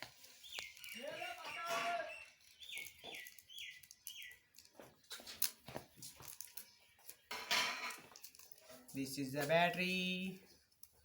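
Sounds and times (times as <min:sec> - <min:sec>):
small bird chirping: 0:00.0 - 0:11.0.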